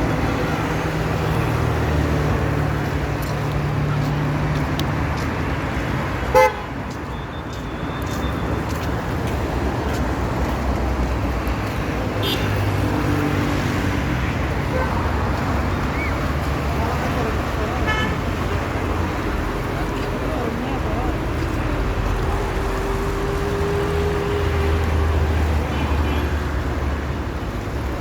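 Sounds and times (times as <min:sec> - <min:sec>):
road traffic engines: 0:00.0 - 0:28.0
loud car horn toot: 0:06.3 - 0:06.8, 0:17.9 - 0:18.2.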